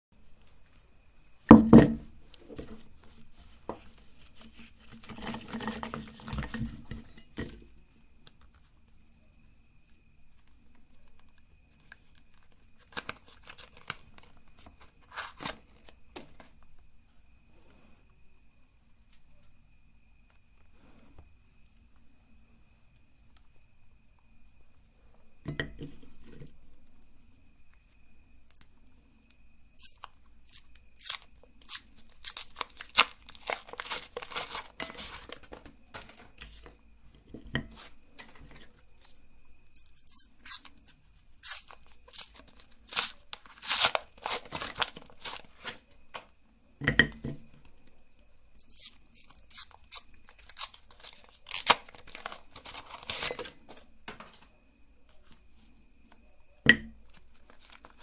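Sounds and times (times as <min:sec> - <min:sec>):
wafer cones crunching in grinder: 0:29.8 - 0:35.6, 0:41.4 - 0:45.7.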